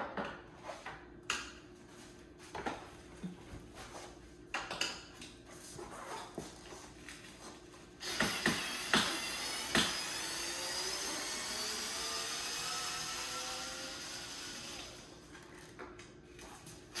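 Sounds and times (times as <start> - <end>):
cordless drill whirring: 8.0 - 15.2.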